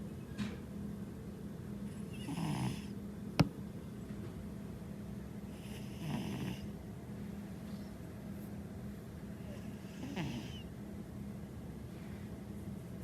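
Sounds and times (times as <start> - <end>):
cat snoring: 1.9 - 3.0, 5.5 - 6.7, 9.4 - 10.7.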